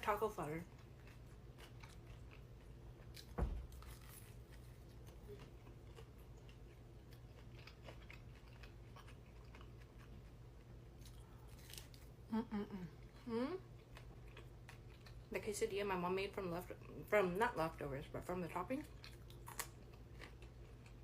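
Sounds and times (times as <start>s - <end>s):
person chewing food: 0.6s - 12.2s, 13.0s - 15.3s, 18.9s - 21.0s
soft thump: 3.3s - 3.8s.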